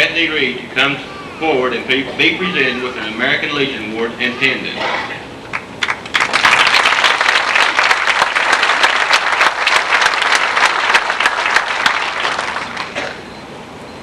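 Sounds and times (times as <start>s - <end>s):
audience applauding: 5.5s - 13.2s.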